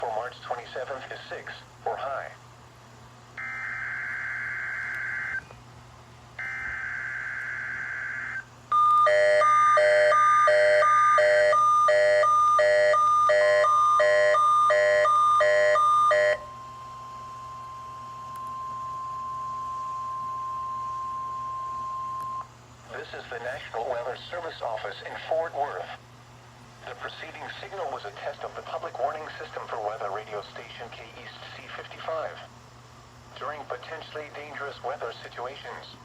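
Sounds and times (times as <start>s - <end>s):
steady single tone: 16.2s - 22.6s.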